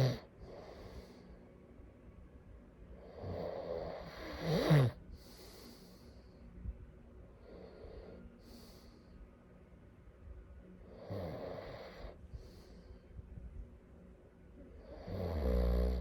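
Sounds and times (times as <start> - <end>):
person snoring: 0.0 - 0.3, 3.1 - 5.0, 14.9 - 16.0
person breathing: 0.0 - 1.5, 5.1 - 6.7, 7.4 - 9.4, 12.0 - 13.4.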